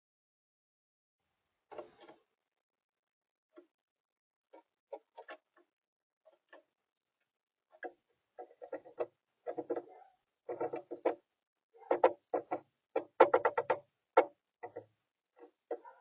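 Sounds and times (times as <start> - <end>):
rodents clicking and tapping: 7.8 - 11.2, 11.8 - 16.0.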